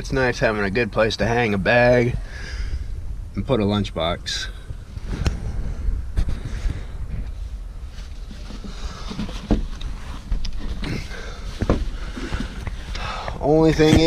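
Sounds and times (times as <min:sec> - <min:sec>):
steady low rumble: 0:00.0 - 0:14.0
faint rustling: 0:04.3 - 0:14.0.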